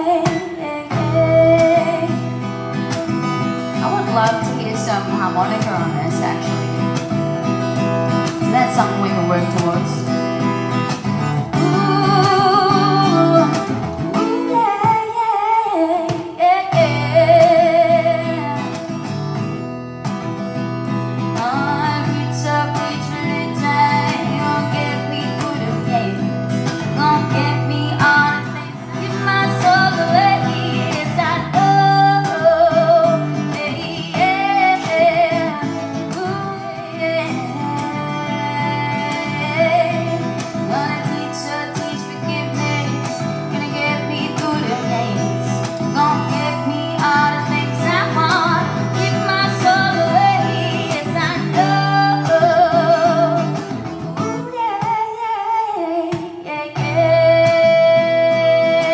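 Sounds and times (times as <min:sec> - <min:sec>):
acoustic guitar strumming: 0:00.0 - 0:58.9
person singing: 0:10.9 - 0:19.0, 0:21.3 - 0:58.9.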